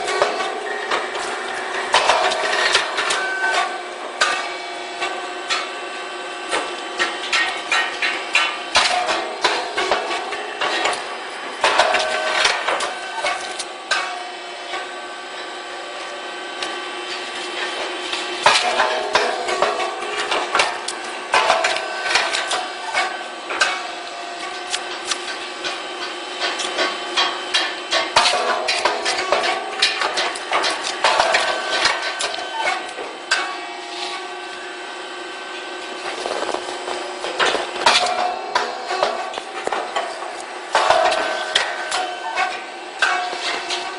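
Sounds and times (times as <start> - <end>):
machine knocking and clattering: 0.0 - 5.8, 6.5 - 14.2, 17.1 - 33.6, 36.0 - 43.9
machine hum: 0.0 - 43.9.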